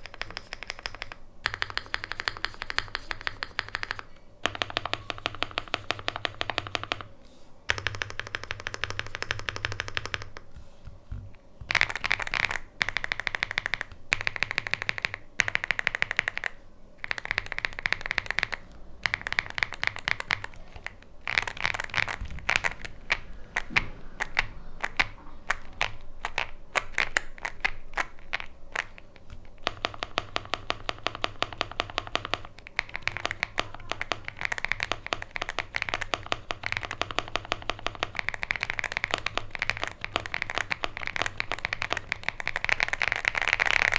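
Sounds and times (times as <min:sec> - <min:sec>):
fast typing on mechanical keyboard: 0:00.0 - 0:07.1, 0:07.7 - 0:10.6, 0:11.6 - 0:43.9.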